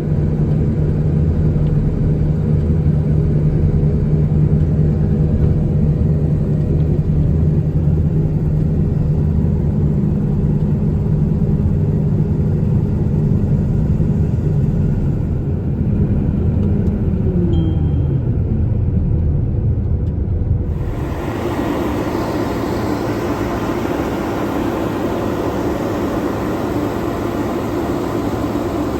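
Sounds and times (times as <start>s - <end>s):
farm machine engine running: 20.7s - 28.9s
hissy running noise: 20.7s - 28.9s.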